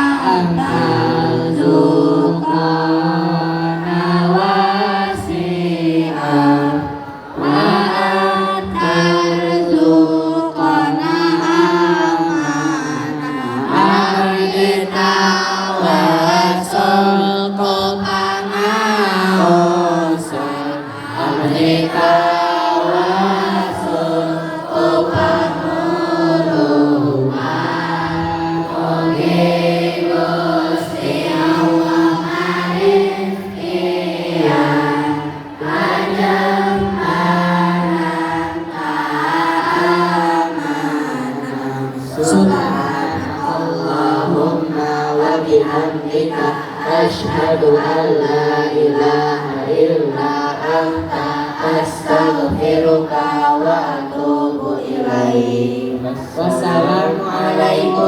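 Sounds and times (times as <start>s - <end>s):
person chanting a melody: 0.0s - 58.0s.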